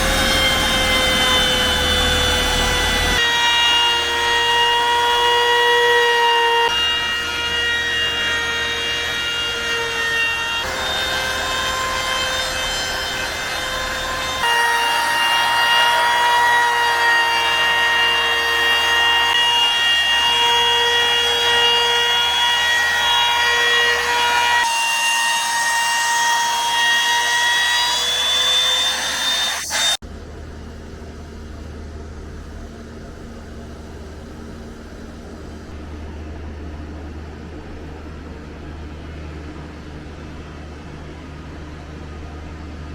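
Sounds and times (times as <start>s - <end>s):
router bit cutting wood: 0.0s - 30.0s
router motor whine: 0.0s - 30.0s.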